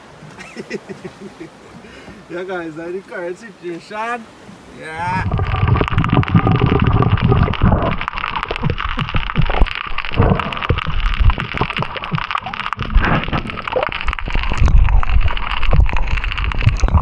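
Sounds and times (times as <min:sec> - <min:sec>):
water sloshing and gurgling: 0:00.0 - 0:03.6, 0:04.2 - 0:17.0
heavy low rumble: 0:05.0 - 0:11.7
small crackling clicks: 0:05.2 - 0:17.0.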